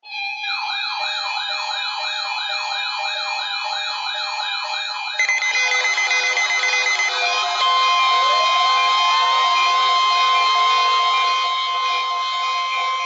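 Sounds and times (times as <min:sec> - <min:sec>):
electronic siren sweeping: 0:05.2 - 0:13.0.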